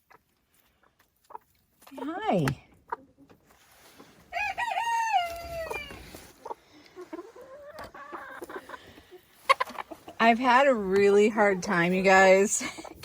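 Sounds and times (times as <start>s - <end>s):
rooster crowing: 4.3s - 6.0s
soft clucking: 5.6s - 10.3s.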